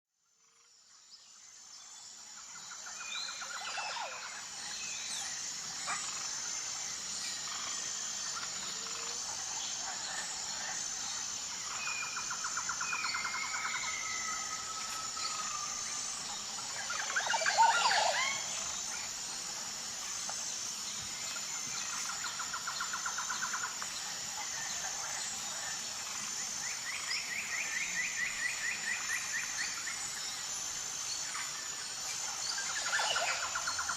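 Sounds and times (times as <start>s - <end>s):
birds trilling and whistling: 3.0s - 19.5s.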